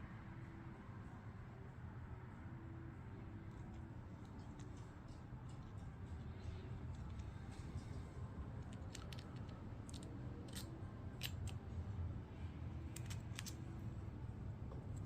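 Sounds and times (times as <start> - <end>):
low steady hum: 0.0 - 15.0
small metal parts clicking: 8.6 - 11.6, 12.9 - 13.7.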